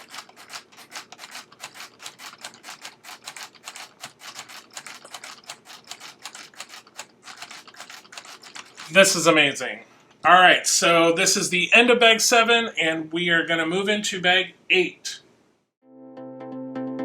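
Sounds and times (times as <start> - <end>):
typewriter keys clacking: 0.0 - 9.2.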